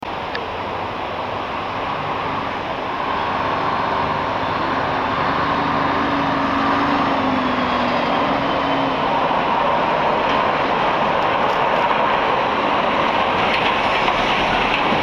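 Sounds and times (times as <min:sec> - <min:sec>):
suspension railway train rumbling: 0:00.0 - 0:15.0.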